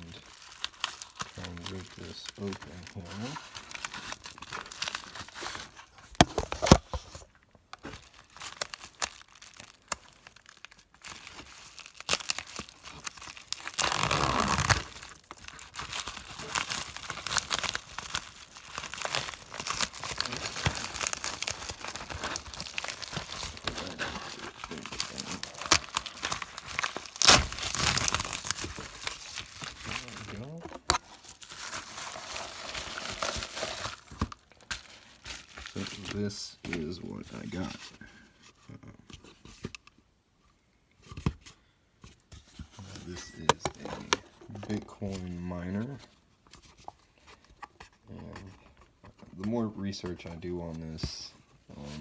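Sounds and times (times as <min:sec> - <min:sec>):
package tearing: 0:00.0 - 0:07.2, 0:07.8 - 0:37.8
packaging crinkling and rustling: 0:00.0 - 0:40.0, 0:41.0 - 0:52.0.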